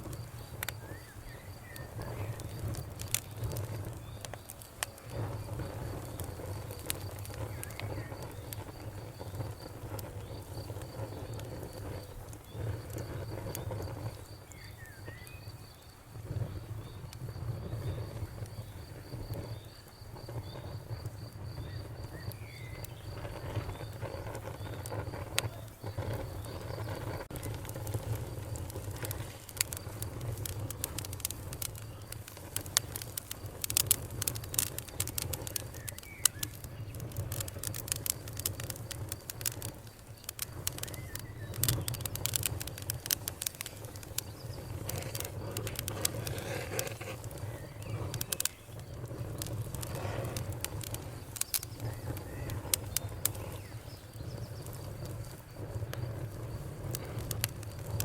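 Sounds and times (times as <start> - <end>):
campfire crackling and popping: 0.0 - 58.0
insect trilling: 16.8 - 58.0.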